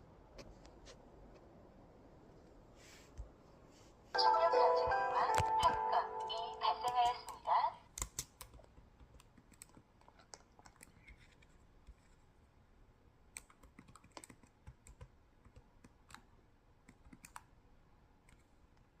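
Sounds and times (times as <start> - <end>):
faint irregular clicks: 6.8 - 12.2, 13.3 - 17.5, 18.2 - 18.9.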